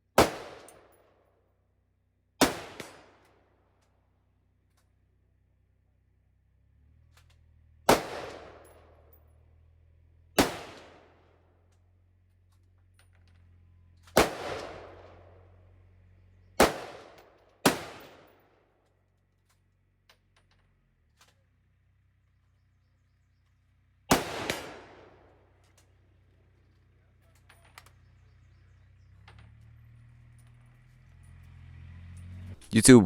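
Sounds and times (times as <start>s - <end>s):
gunshots with ringing echo: 0.2s - 0.9s, 2.4s - 3.0s, 7.9s - 8.9s, 10.4s - 11.1s, 14.2s - 15.3s, 16.6s - 18.3s.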